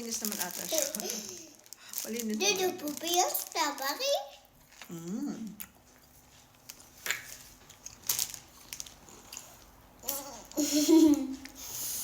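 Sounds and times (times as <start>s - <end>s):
person chewing strawberries: 4.6s - 10.5s.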